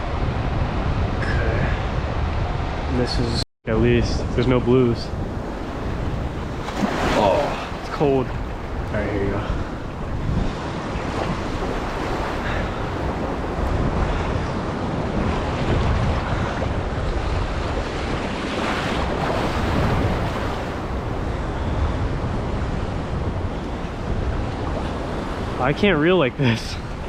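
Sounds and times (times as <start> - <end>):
wind buffeting microphone: 0.0 - 27.0
waves washing at shore: 4.8 - 27.0.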